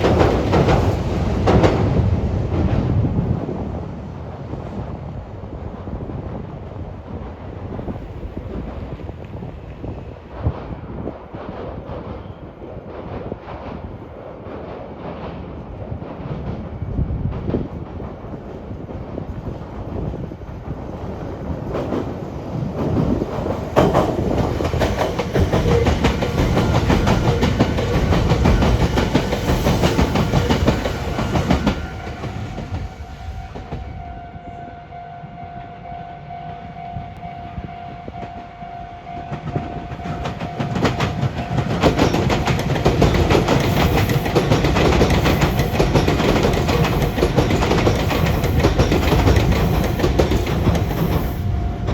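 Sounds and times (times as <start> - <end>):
train wheels clattering over points: 22.8 - 32.8, 40.0 - 51.9.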